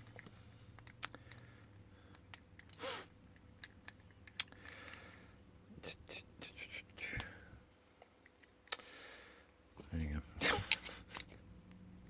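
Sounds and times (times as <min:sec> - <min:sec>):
padlock parts clicking: 0:00.1 - 0:05.3.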